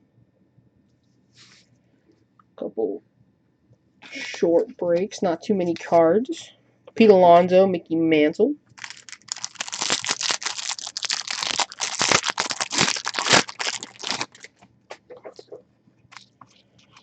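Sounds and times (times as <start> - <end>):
card pack wrapper crinkling and tearing: 8.8 - 14.6.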